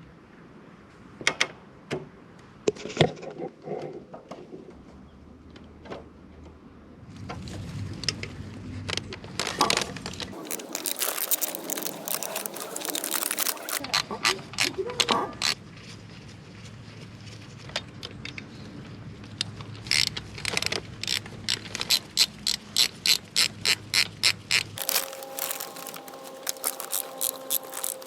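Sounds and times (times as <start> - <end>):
tools clicking and knocking: 19.3 - 28.0.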